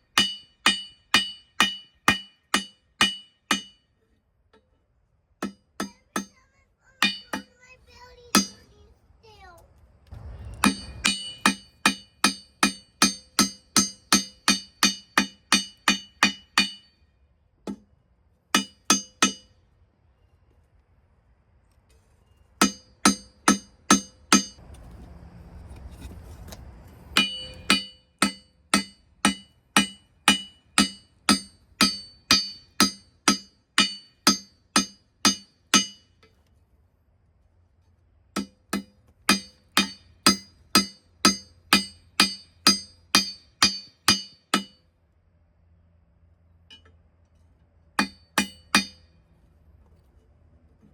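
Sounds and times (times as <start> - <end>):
hammer striking steel on anvil: 0.0 - 3.9, 5.4 - 6.4, 7.0 - 7.6, 8.3 - 8.6, 10.5 - 17.9, 18.5 - 19.6, 22.6 - 24.6, 27.2 - 36.3, 38.4 - 44.9, 48.0 - 49.2.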